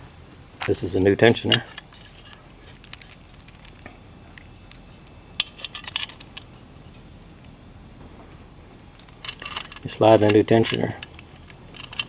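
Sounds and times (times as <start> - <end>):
small metal parts clinking: 1.5 - 3.8, 5.4 - 6.6, 9.0 - 12.0.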